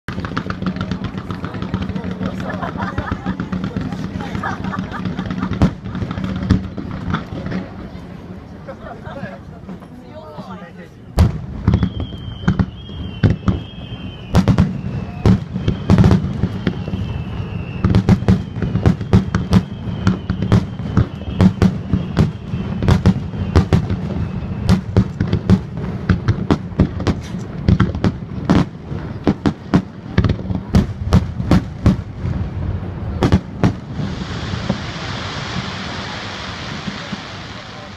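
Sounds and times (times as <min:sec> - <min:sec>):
faint falling whistle: 0:11.6 - 0:25.0
steady hiss: 0:33.7 - 0:37.9.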